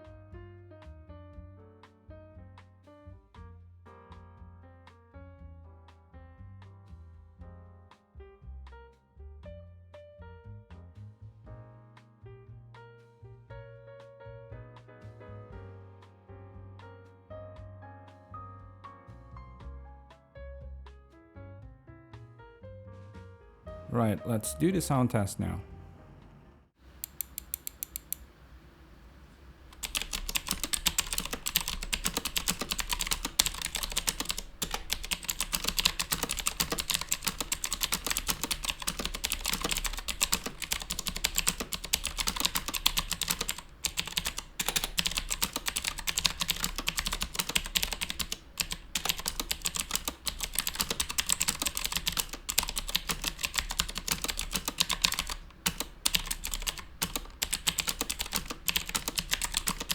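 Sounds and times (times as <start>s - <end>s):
mechanical keyboard typing: 26.9s - 28.2s, 29.7s - 59.9s.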